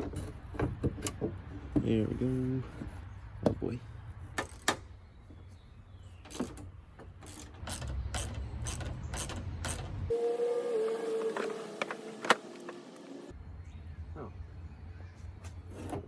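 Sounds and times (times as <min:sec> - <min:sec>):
ratchet wrench clicking: 0:07.2 - 0:10.0.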